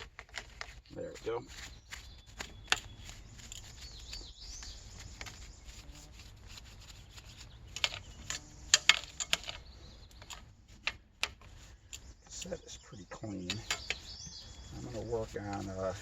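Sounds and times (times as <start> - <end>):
bird chirping faintly: 0.9 - 16.0
sharp clicks and knocks: 7.2 - 12.6, 13.4 - 14.1.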